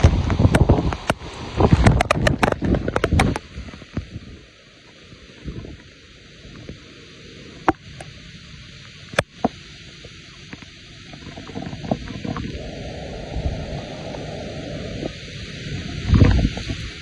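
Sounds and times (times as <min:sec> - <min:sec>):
storm wind buffeting microphone: 0:00.0 - 0:04.4, 0:11.4 - 0:17.0
steady hiss: 0:00.0 - 0:17.0.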